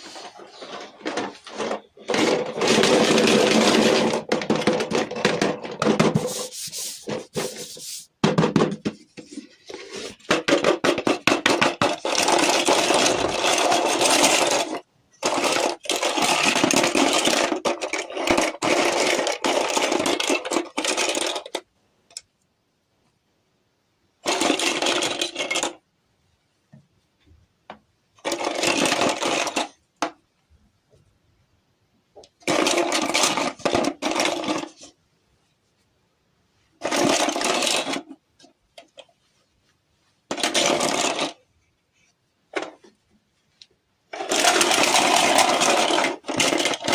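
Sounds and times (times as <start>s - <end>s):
small objects rubbing and clicking: 0.0s - 8.1s.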